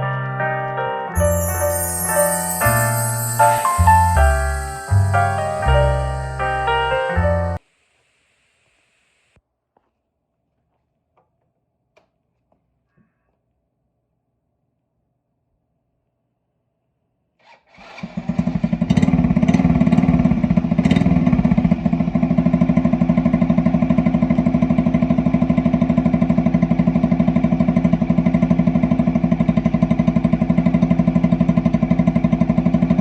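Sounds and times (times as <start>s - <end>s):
small motorcycle engine idling: 18.0s - 33.0s.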